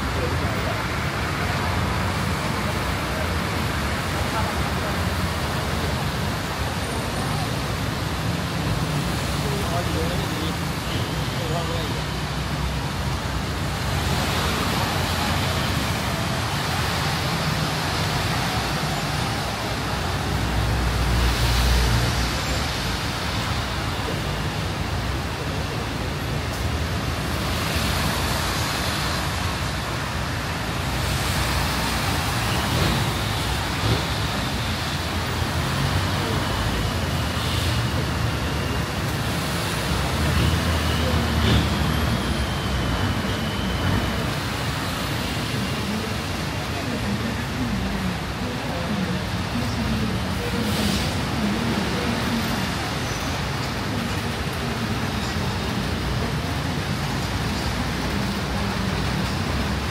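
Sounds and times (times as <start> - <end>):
heavy rain: 0.0 - 59.9
road traffic: 0.0 - 59.9.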